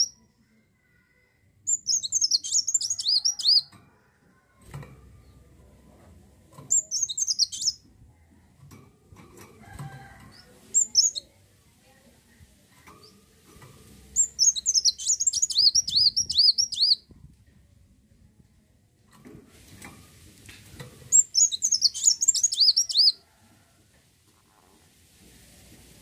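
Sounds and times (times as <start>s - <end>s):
sunbird chirping: 1.7s - 3.6s, 6.7s - 7.8s, 14.2s - 17.0s, 21.1s - 23.2s.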